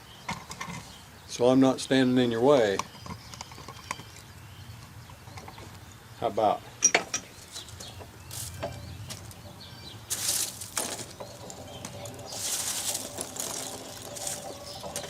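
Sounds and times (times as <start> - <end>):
rustling and scraping handling: 7.1 - 15.0.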